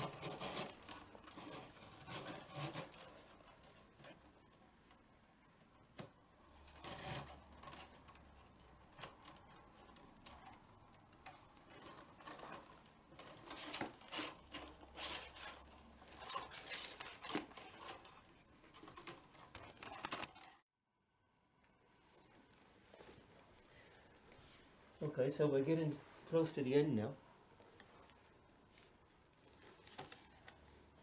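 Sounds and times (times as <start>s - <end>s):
leather strap rustling and scraping: 6.3s - 20.7s, 27.4s - 31.0s.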